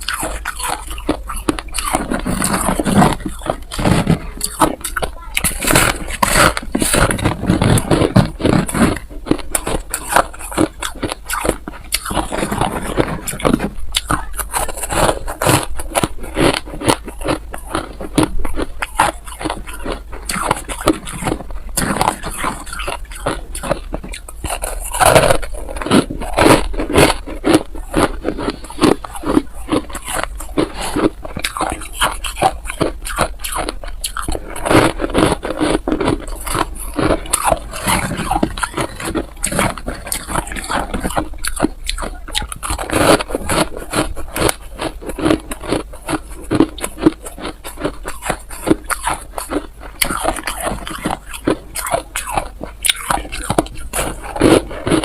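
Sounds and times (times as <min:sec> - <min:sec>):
ice being chewed: 0:00.0 - 0:55.0.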